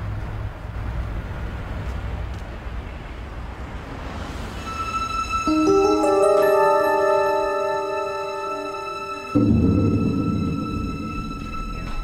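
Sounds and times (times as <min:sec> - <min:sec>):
low rumble of vehicle noise: 0:00.0 - 0:05.5
sustained music tones: 0:04.6 - 0:12.0.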